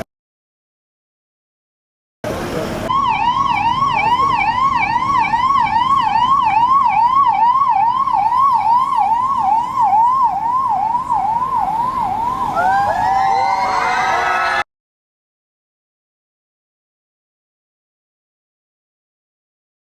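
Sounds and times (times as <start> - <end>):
second siren: 2.8 - 14.7
vehicle siren yelping: 2.8 - 14.7.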